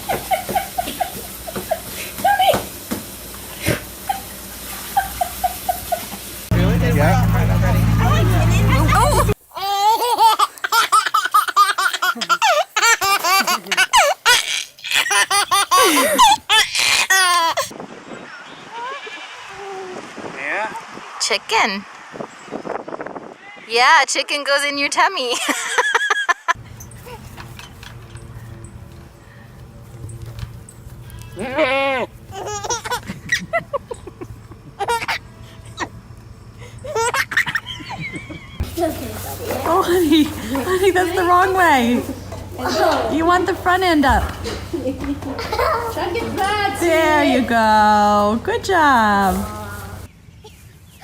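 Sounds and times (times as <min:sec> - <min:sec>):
baby laughing: 0:08.9 - 0:17.7, 0:32.3 - 0:34.1, 0:34.7 - 0:35.9, 0:36.8 - 0:38.7.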